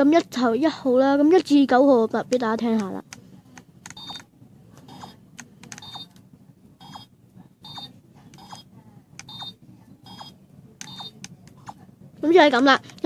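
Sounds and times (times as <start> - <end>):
short electronic beeps: 3.9 - 4.2, 5.8 - 6.1, 6.8 - 11.2.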